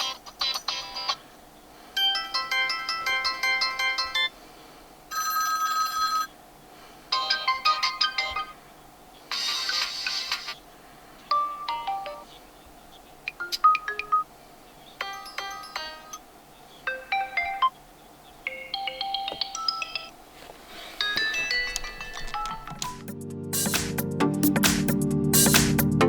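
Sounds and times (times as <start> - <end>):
electronic ringtone melodies: 2.0 - 4.3, 7.2 - 8.6, 11.3 - 12.3, 13.4 - 14.3, 15.0 - 16.2, 16.9 - 17.8, 18.5 - 20.1, 21.0 - 23.8.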